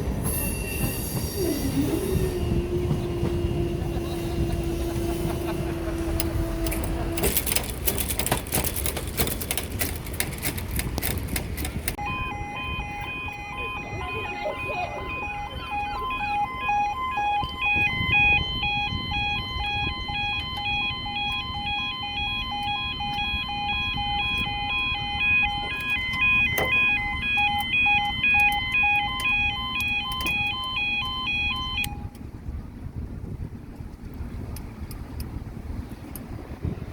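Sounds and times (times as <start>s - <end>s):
train wheels clattering: 0.0s - 12.0s
two-tone crossing alarm: 0.2s - 9.5s, 11.9s - 32.2s.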